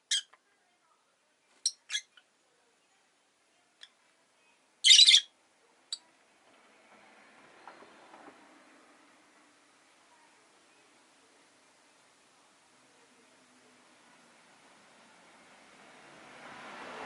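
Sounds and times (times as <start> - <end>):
lovebird chirping and squawking: 0.0 - 0.3, 1.6 - 2.2, 4.8 - 5.3.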